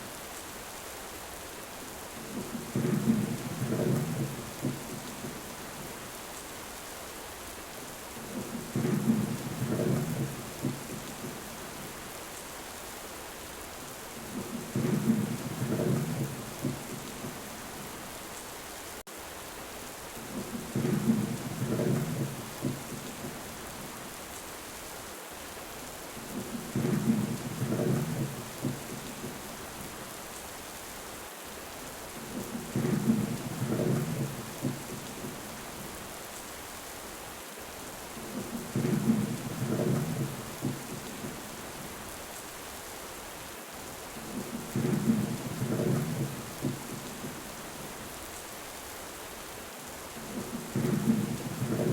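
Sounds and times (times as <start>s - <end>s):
rain hissing: 0.0s - 51.9s
low thunder rumbles: 2.4s - 5.4s, 8.3s - 11.0s, 14.2s - 17.5s, 20.3s - 23.4s, 26.2s - 29.5s, 32.3s - 35.9s, 38.2s - 41.8s, 44.2s - 48.0s, 50.2s - 51.9s.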